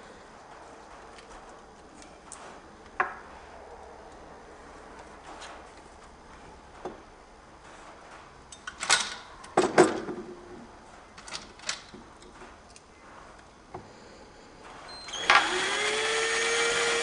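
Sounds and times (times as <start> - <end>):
wagon parts clanking and rattling: 7.7 - 10.3.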